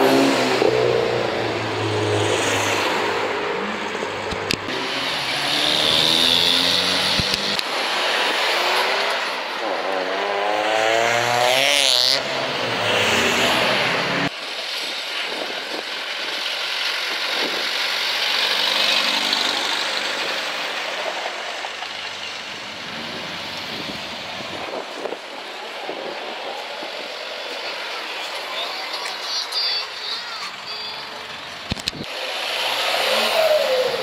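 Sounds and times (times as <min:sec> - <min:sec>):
car engine accelerating hard: 0:00.0 - 0:14.3, 0:32.0 - 0:34.0
distant car engines: 0:00.0 - 0:34.0
street noise: 0:00.0 - 0:34.0.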